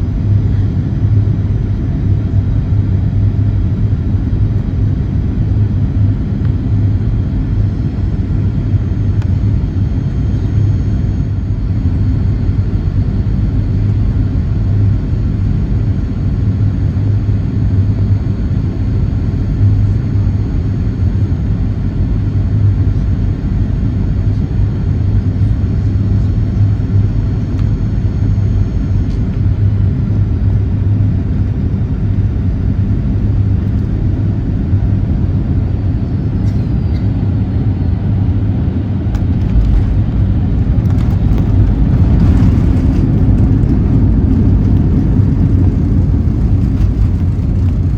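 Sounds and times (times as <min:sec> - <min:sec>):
aircraft cabin engine rumble: 0:00.0 - 0:47.9.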